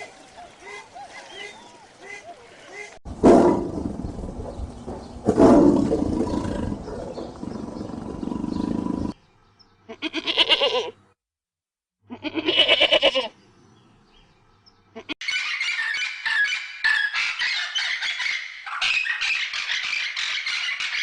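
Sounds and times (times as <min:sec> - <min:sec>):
large animal rough call: 0:05.2 - 0:09.2
goat bleating: 0:09.9 - 0:11.0, 0:12.1 - 0:13.3.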